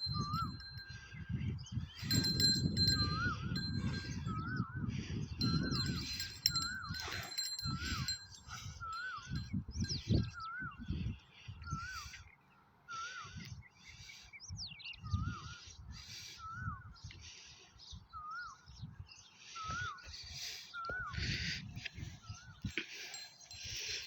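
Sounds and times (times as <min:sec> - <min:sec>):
birds chirping: 0:00.0 - 0:24.0.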